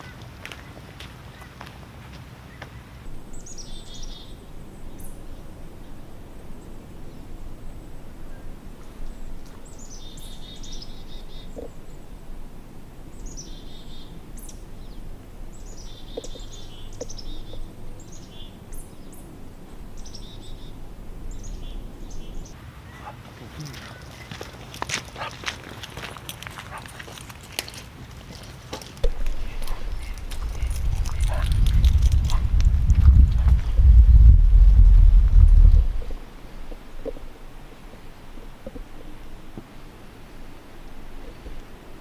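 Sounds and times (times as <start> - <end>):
low background rumble: 3.0 - 22.6, 29.0 - 42.0.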